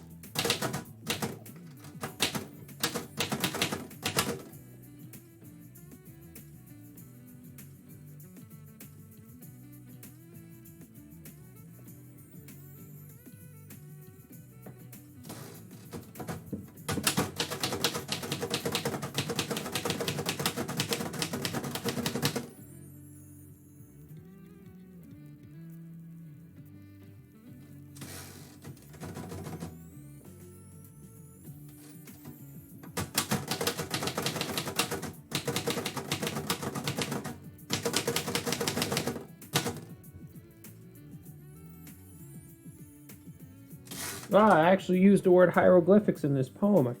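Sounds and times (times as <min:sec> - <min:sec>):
typewriter keystrokes: 0:00.0 - 0:04.6, 0:15.3 - 0:22.5, 0:28.0 - 0:29.7, 0:32.0 - 0:40.0, 0:43.9 - 0:44.6.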